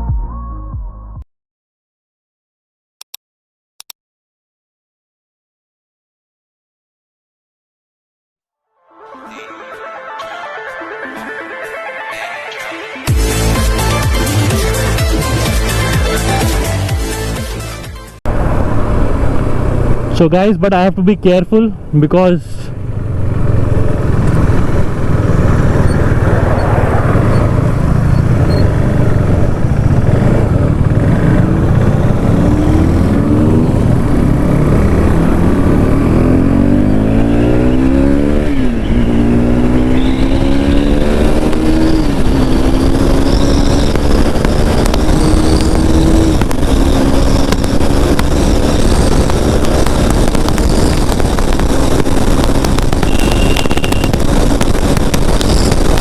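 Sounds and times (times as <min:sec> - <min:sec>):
motorcycle engine accelerating: 0:13.1 - 0:20.4, 0:22.7 - 0:56.0
wind noise on microphone: 0:38.2 - 0:56.0.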